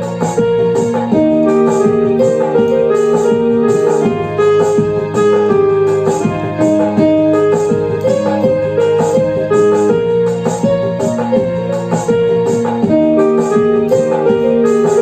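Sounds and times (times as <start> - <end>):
electronic keyboard music: 0.0 - 15.0
rhythm accompaniment ticks: 0.0 - 15.0.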